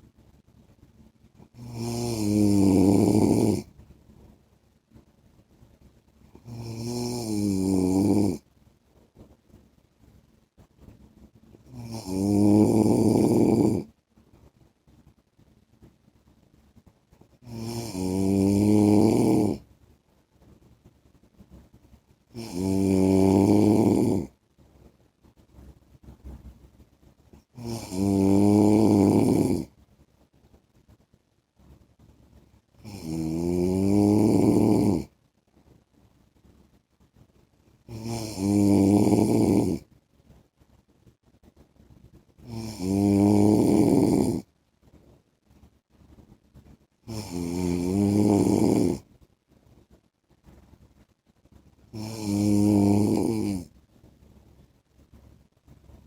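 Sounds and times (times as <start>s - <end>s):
man snoring: 1.6s - 3.7s, 6.4s - 8.4s, 11.7s - 13.9s, 17.4s - 19.6s, 22.4s - 24.3s, 27.6s - 29.7s, 32.8s - 35.1s, 37.9s - 39.8s, 42.5s - 44.5s, 47.1s - 49.0s, 51.9s - 53.7s.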